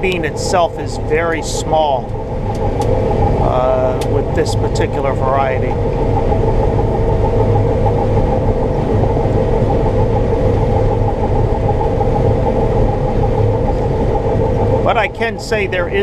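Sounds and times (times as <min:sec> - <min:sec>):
combine harvester drone: 0:00.0 - 0:16.0.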